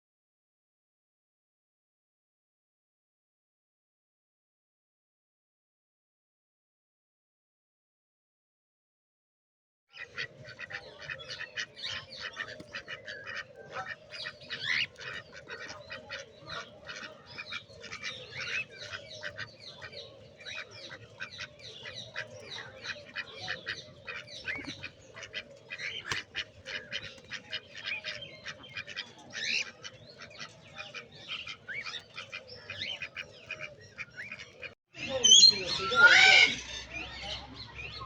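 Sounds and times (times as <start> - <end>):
flock of birds chattering: 9.9 - 38.0.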